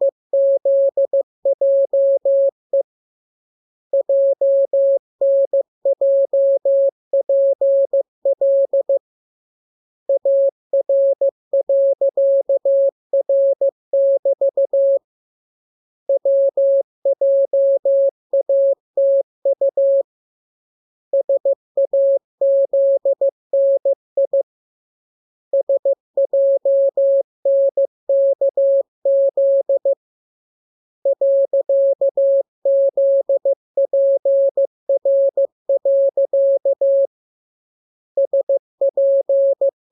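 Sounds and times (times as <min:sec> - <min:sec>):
morse code tone: 0:31.0 - 0:37.1, 0:38.2 - 0:39.8.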